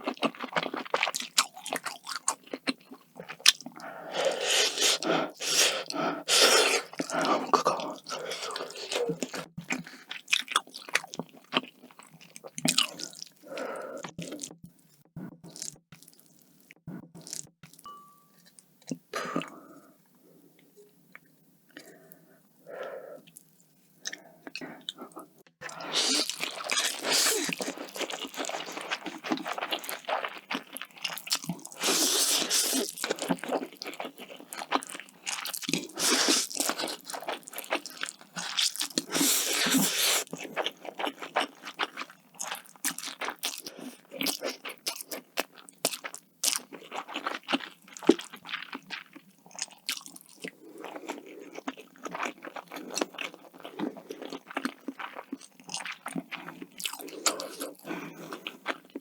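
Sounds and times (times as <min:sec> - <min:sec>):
chewing with small clicks: 0:00.0 - 0:03.8, 0:23.2 - 0:31.8, 0:32.7 - 0:39.1, 0:40.2 - 0:59.0.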